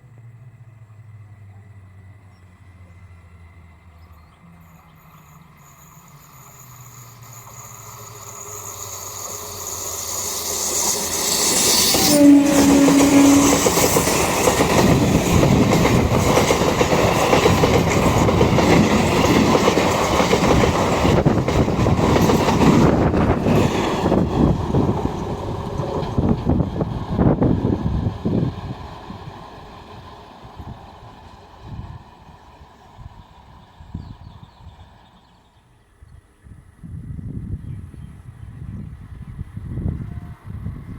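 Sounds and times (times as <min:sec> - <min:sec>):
train passing at speed: 0:00.0 - 0:36.0, 0:36.6 - 0:40.9
wheels clattering over rail joints: 0:04.7 - 0:33.2
train horn blast: 0:11.7 - 0:14.2.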